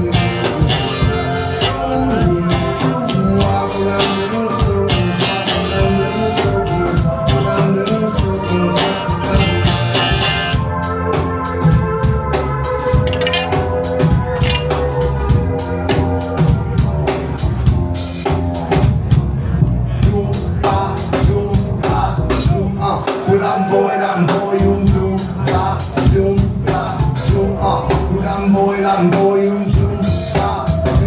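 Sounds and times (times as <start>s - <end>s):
drum kit beat: 0.0s - 19.2s
rock band playing: 0.0s - 19.2s
deep bass: 0.0s - 23.1s, 24.6s - 28.5s.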